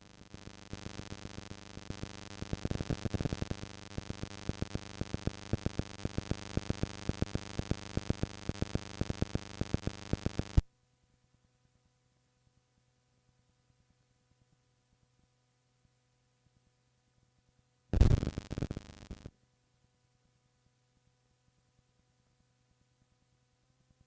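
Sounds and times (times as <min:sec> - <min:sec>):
tape hiss: 0:00.0 - 0:10.7, 0:17.9 - 0:19.4
clicks and crackles: 0:18.0 - 0:19.3.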